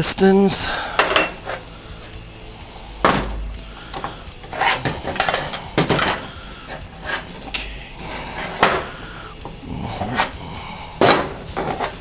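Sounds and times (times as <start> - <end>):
metal parts knocking and clinking: 5.0 - 6.4.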